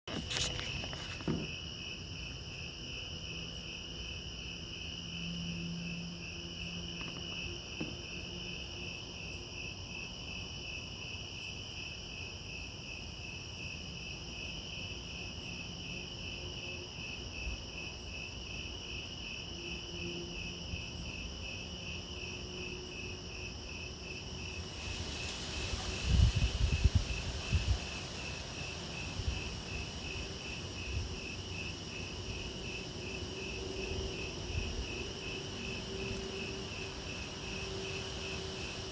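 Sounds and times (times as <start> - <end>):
crickets chirping: 0.1 - 38.9
high insect trill: 0.1 - 38.9
wind thumps on microphone: 24.7 - 30.2.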